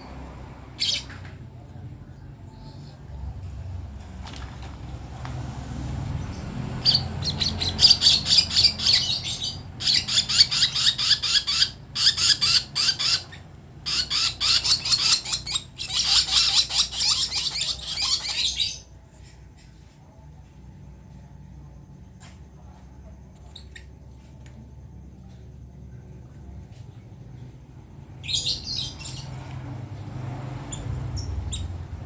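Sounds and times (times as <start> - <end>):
bird chick chirping: 6.8 - 18.9.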